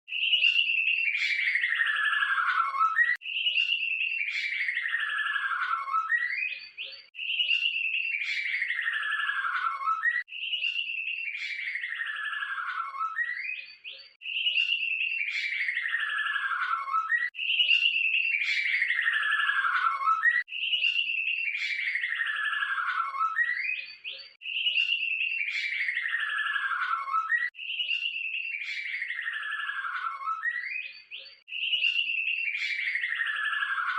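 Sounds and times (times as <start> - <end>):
bird song trill: 0.0 - 33.9.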